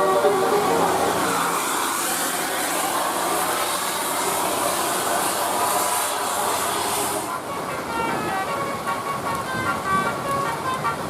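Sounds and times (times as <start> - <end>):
bus musical horn: 0.0 - 2.3, 5.5 - 11.0
heavy rain: 0.0 - 11.0
traffic on a wet road: 0.0 - 11.0.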